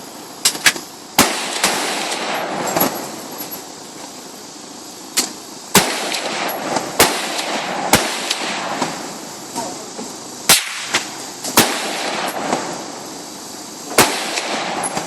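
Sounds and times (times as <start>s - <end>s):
gunshots with echo: 5.8s - 9.0s, 14.0s - 15.0s.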